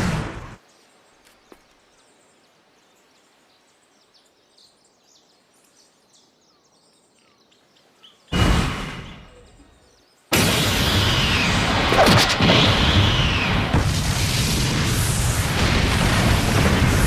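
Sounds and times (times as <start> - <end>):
bird chirps: 0.6 - 8.4, 9.0 - 10.3.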